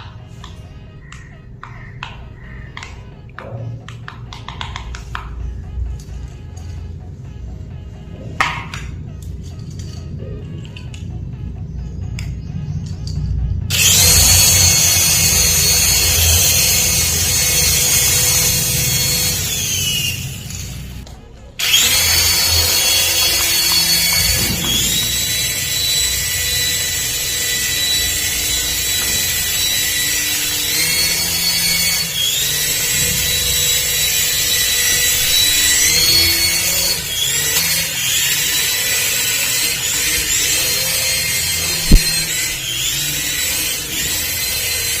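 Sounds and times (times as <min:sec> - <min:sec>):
toy car electric motor whining: 0:11.8 - 0:21.0, 0:21.6 - 0:45.0.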